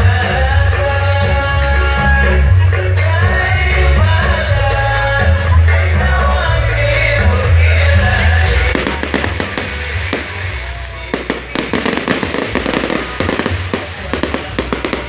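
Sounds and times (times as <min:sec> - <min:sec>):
music with bass line: 0:00.0 - 0:15.0
fireworks popping and crackling: 0:08.5 - 0:15.0.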